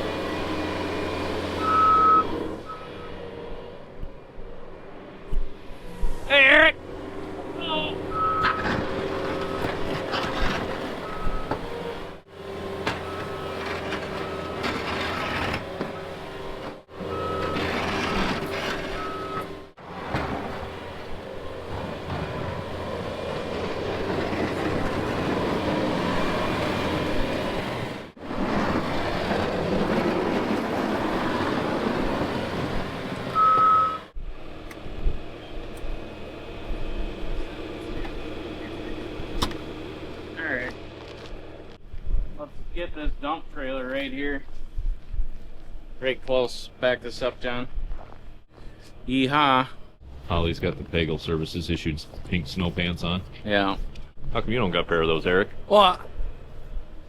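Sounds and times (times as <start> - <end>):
engine running: 0.0 - 57.0
vehicle backup alarm beeping: 1.5 - 3.3, 7.6 - 9.9, 11.0 - 11.9, 13.0 - 16.2, 16.9 - 19.7, 33.3 - 34.2.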